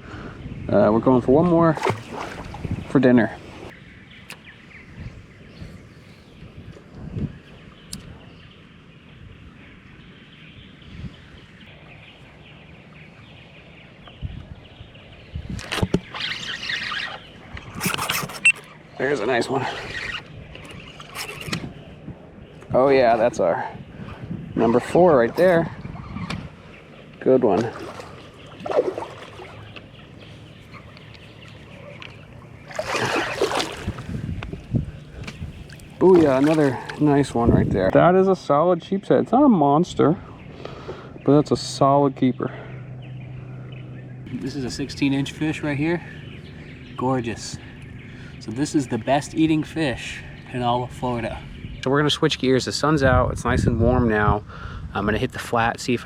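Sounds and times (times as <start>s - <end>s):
birds chirping: 0.0s - 56.0s
water sloshing against paddleboard: 1.8s - 3.7s, 27.4s - 37.4s
water splashing rush: 27.5s - 29.8s, 32.6s - 34.2s, 35.6s - 37.4s.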